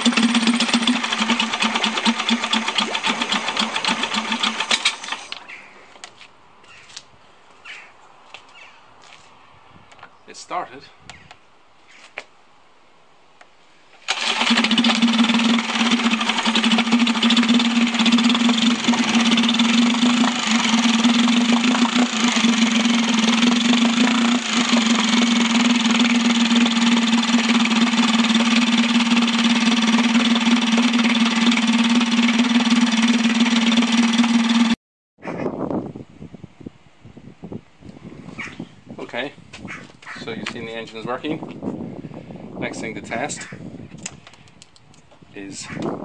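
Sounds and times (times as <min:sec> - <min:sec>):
outboard engine running: 0:00.0 - 0:05.3, 0:14.1 - 0:34.8.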